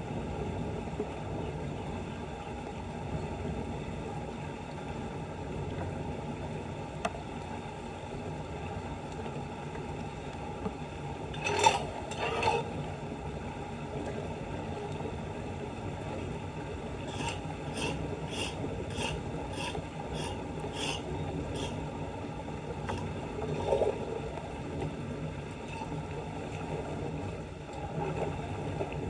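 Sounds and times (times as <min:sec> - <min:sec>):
debris scraping at street drain: 0:11.4 - 0:12.7, 0:17.1 - 0:21.8.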